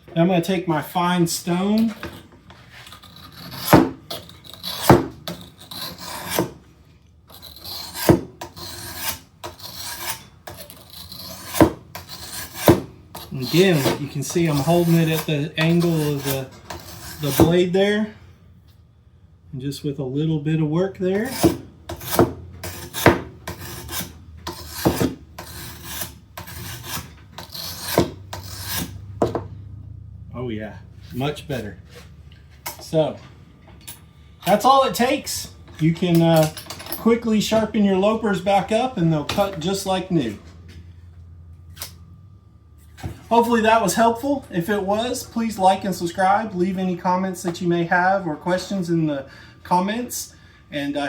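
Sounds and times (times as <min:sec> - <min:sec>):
sharpening stone scraping blade: 0:02.8 - 0:06.5, 0:07.3 - 0:17.5, 0:21.2 - 0:29.0.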